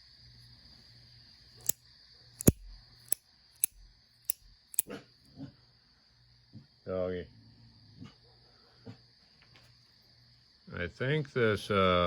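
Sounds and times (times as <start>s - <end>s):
pen clicking: 2.4s - 4.9s.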